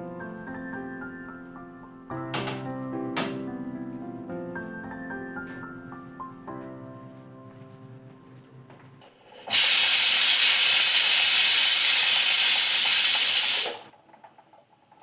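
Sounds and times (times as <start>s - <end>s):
loud steady hiss: 9.0s - 13.9s.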